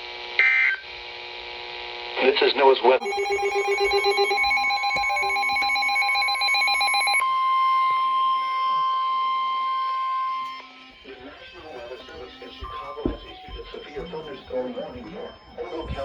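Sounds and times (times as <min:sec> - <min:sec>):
warbling electronic tones: 0:03.0 - 0:07.2
steady warning tone: 0:03.0 - 0:16.0.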